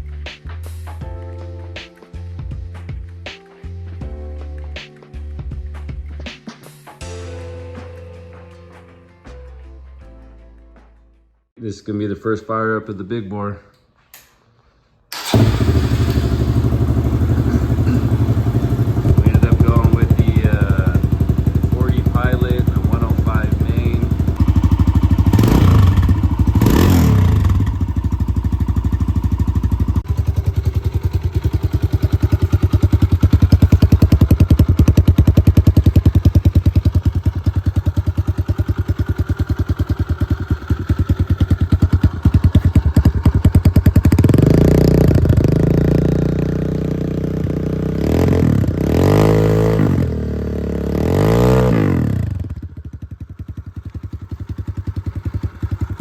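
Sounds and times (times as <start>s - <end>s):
motorcycle engine revving: 15.1s - 56.0s.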